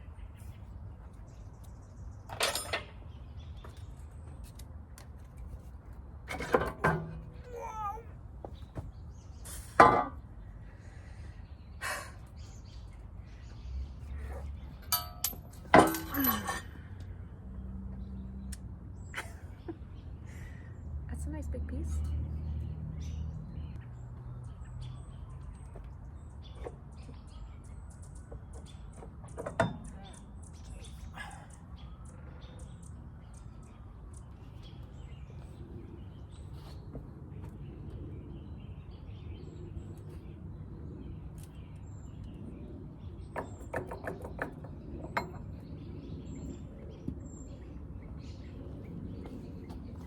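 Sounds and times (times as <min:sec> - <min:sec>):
metal parts clinking: 0:02.3 - 0:02.9, 0:14.7 - 0:16.8.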